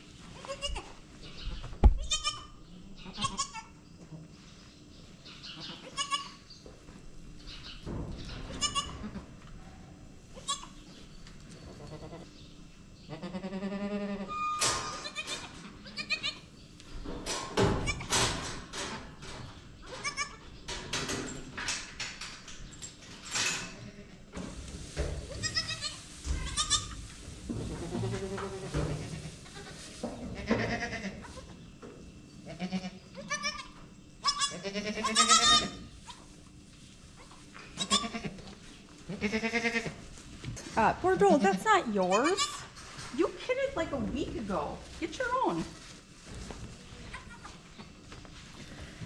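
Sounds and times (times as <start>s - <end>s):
goats bleating: 2.1s - 3.8s, 5.6s - 6.4s, 11.8s - 12.3s, 13.1s - 16.4s, 25.4s - 27.0s, 27.6s - 31.5s, 32.5s - 36.2s, 37.8s - 38.4s, 39.1s - 40.0s, 47.0s - 47.7s.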